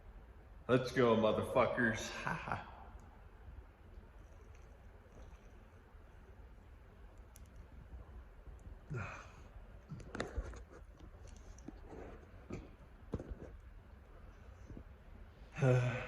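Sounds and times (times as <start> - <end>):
mouth sounds and clicks: 2.9 - 15.0
man sighing and breathing hard: 8.9 - 9.5, 15.5 - 16.0.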